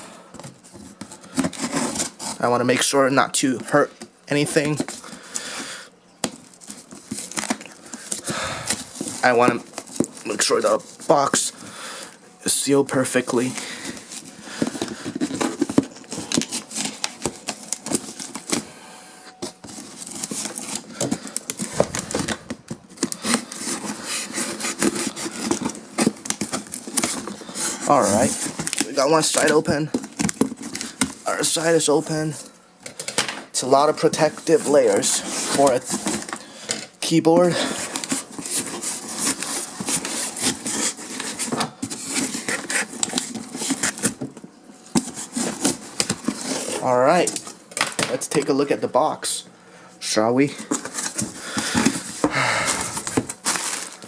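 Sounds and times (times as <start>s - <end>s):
cardboard box being opened: 19.4s - 28.8s
cardboard box scraping and rubbing: 21.6s - 26.1s.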